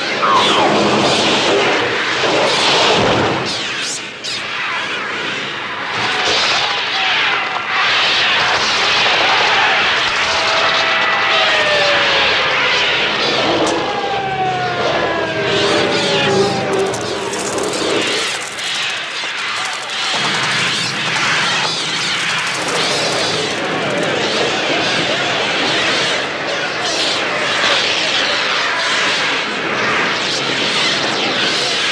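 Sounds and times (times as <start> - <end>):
electronic gull shrieks: 0.0 - 1.8, 13.3 - 22.0
long falling cries: 9.4 - 25.6.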